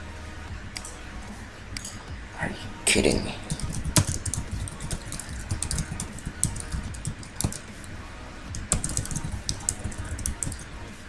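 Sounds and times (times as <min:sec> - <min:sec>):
computer keyboard typing: 0:03.4 - 0:07.7, 0:08.6 - 0:10.7.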